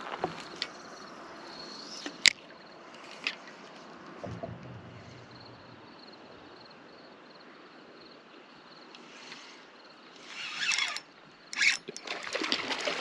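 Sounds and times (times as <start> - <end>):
low thump: 4.2 - 6.7.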